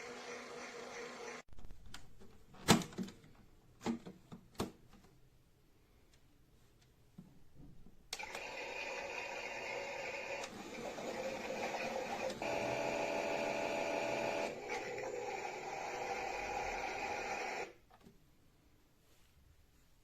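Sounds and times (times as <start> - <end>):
toy washing machine sound effect: 0.0 - 1.4, 8.2 - 17.8.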